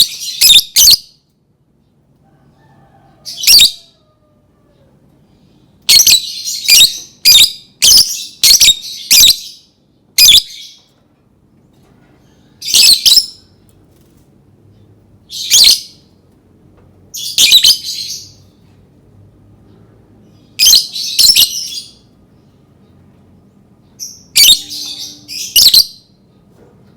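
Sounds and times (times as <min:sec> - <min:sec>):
lovebird chirping: 0:00.0 - 0:01.0, 0:05.9 - 0:09.6, 0:10.2 - 0:10.8, 0:12.6 - 0:13.4, 0:15.3 - 0:16.0, 0:17.1 - 0:18.4, 0:20.2 - 0:22.1, 0:24.0 - 0:26.2.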